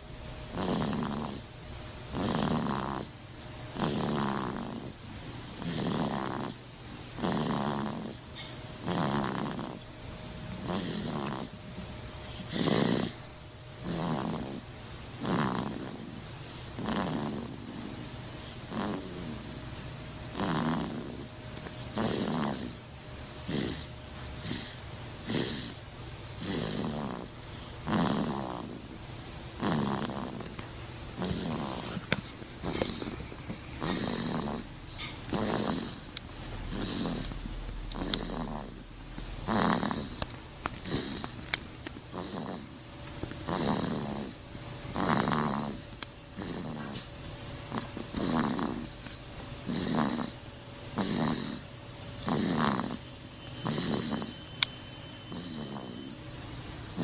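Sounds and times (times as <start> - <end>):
person snoring: 0.5 - 1.5, 2.1 - 3.1, 3.8 - 5.0, 5.6 - 6.6, 7.2 - 8.2, 8.8 - 9.8, 10.6 - 11.6, 12.4 - 13.2, 13.8 - 14.6, 15.2 - 19.5, 20.3 - 21.3, 21.9 - 22.8, 23.5 - 25.8, 26.4 - 28.9, 29.6 - 30.6, 31.2 - 40.2, 42.1 - 42.8, 43.4 - 45.8, 46.4 - 47.0, 47.7 - 49.0, 49.6 - 50.4, 51.0 - 51.6, 52.2 - 53.0, 53.6 - 54.4, 55.3 - 56.2.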